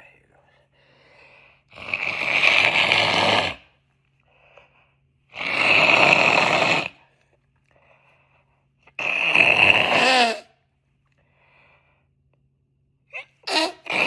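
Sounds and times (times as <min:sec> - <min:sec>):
wet nose blows: 0:01.7 - 0:03.8, 0:05.3 - 0:07.1, 0:08.9 - 0:10.5, 0:13.4 - 0:14.0.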